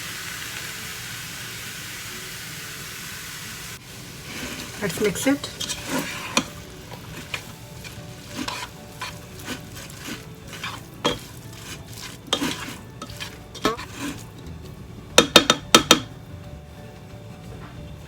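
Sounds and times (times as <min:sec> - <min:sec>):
low sizzle: 0:00.0 - 0:18.0
utensil scraping a frying pan: 0:03.8 - 0:16.1
sharp knocks: 0:15.2 - 0:16.1.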